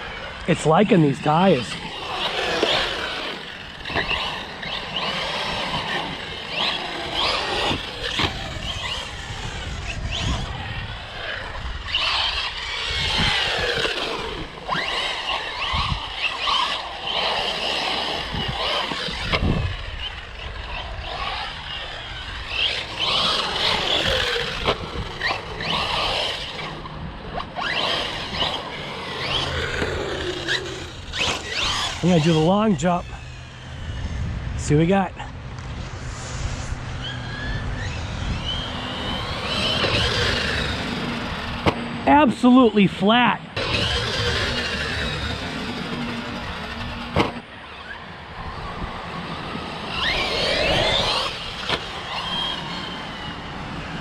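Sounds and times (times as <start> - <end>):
electric motor whining: 0.0 - 54.0
tyre noise: 0.0 - 54.0.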